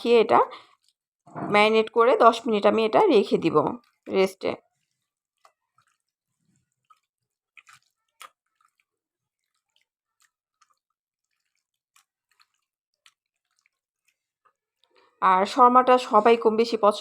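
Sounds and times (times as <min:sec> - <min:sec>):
hands kneading wet meat: 0:03.6 - 0:15.1.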